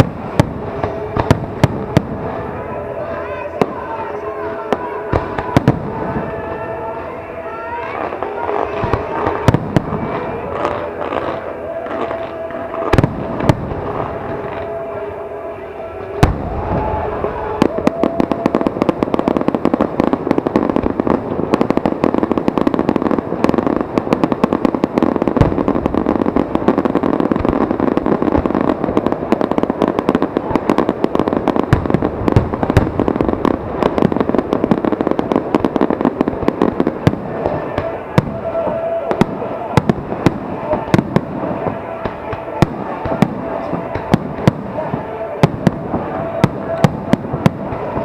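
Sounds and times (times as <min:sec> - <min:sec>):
firework booms: 0:00.0 - 0:06.7, 0:07.8 - 0:15.0, 0:16.0 - 0:48.0
crackle of small firework bursts: 0:00.0 - 0:48.0
firework bang: 0:16.0 - 0:48.0.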